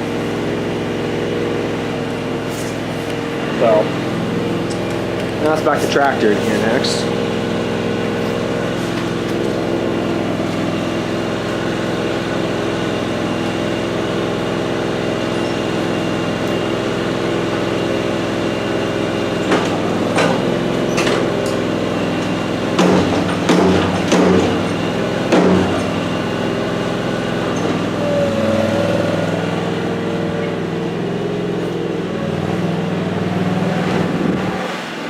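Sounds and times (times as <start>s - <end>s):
tractor engine idling: 0.0s - 35.0s
knocks: 22.8s - 25.9s.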